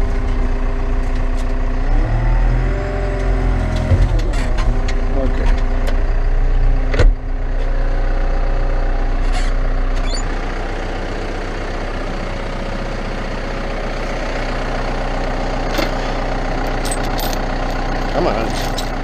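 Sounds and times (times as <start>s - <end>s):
diesel engine idling: 0.0s - 19.0s.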